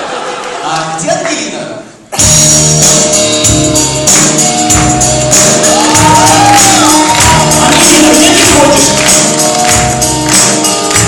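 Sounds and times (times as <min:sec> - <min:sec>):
upbeat music with steady beat: 0:02.2 - 0:11.0.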